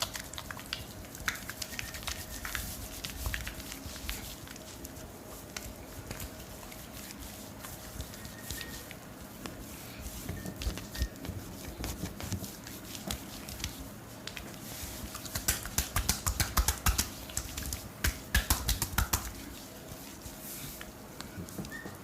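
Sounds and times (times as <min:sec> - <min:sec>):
hands slapping on skin: 0:00.0 - 0:04.3, 0:11.8 - 0:14.5, 0:15.1 - 0:19.4.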